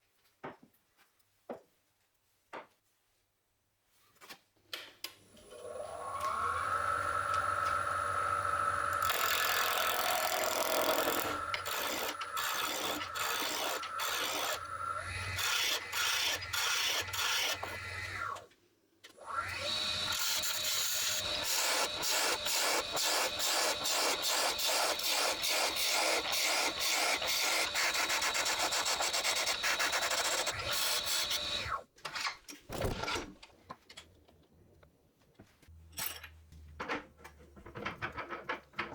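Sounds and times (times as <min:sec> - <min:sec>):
wood lathe motor whining: 0:05.4 - 0:18.4, 0:19.2 - 0:31.8
turning tool scraping wood: 0:08.5 - 0:18.4, 0:20.2 - 0:31.7.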